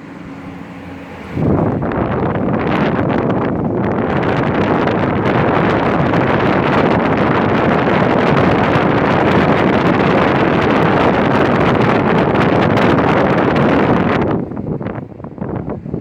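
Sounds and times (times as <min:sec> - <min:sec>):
air conditioner fan blowing: 0:00.0 - 0:16.0.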